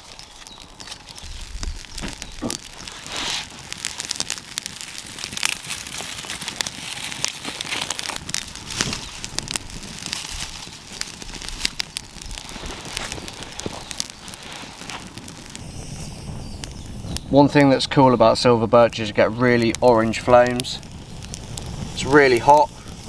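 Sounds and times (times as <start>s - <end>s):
campfire crackling and popping: 0.0s - 23.0s
fire hissing: 0.0s - 23.0s.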